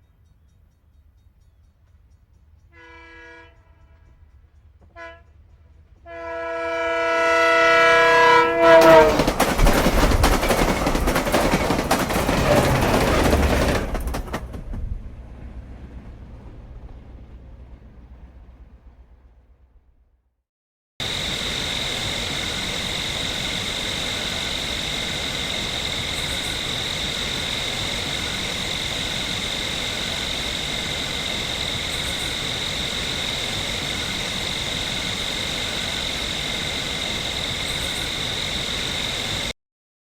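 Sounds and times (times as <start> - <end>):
crickets trilling: 21.0 - 39.5.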